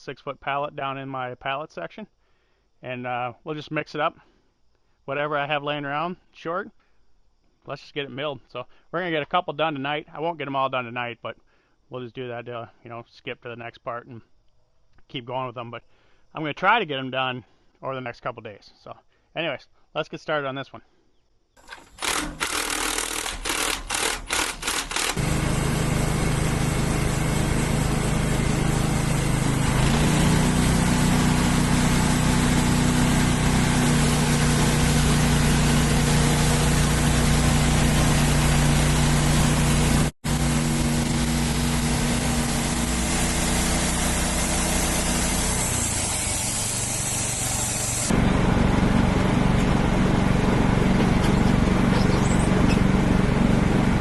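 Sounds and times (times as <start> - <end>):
sawmill engine starting and running: 21.6 - 54.0.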